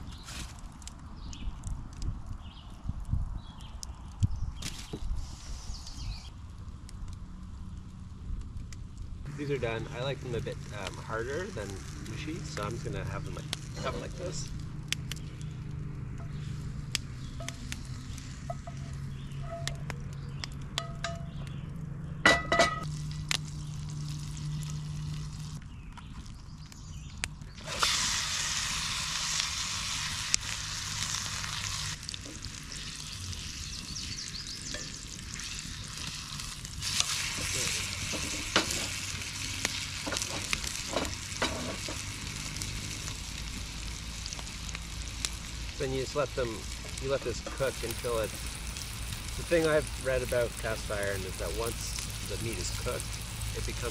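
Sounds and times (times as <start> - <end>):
chicken sizzling in a skillet: 9.3 - 14.6, 16.3 - 19.7, 22.8 - 25.6, 27.6 - 53.9.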